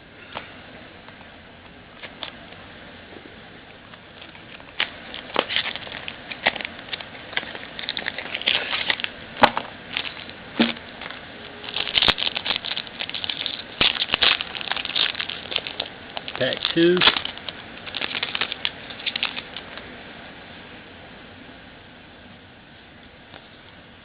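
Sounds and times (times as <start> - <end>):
card wrapper crinkling: 4.1 - 19.8.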